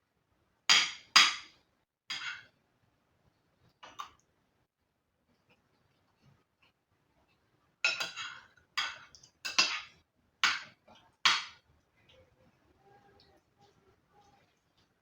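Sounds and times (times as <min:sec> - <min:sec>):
cutlery clinking on a dish: 0:07.8 - 0:11.6.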